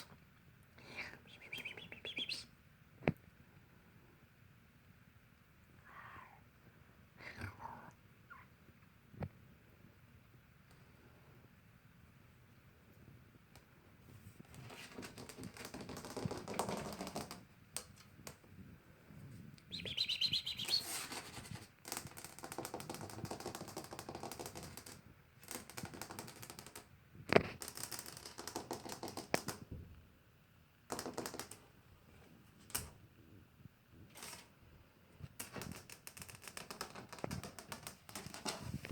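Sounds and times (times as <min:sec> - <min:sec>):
kitten squeak: 0:19.7 - 0:21.0.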